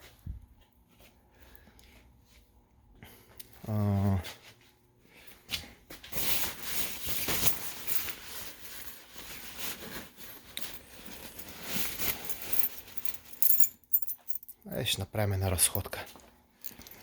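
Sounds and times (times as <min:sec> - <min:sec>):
rustling and scraping: 0:05.9 - 0:14.6.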